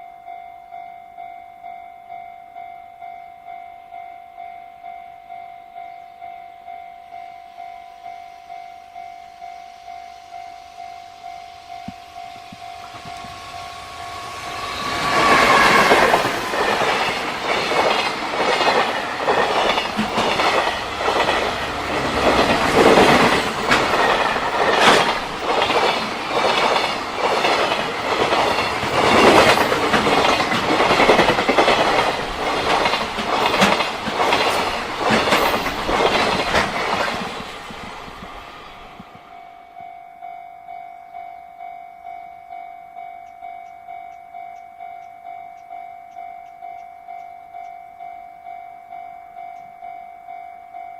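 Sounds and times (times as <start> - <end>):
level crossing warning bell: 0.0 - 37.6, 39.1 - 50.9
freight train passing: 0.0 - 50.9
wheels clacking over rail joints: 11.8 - 39.3.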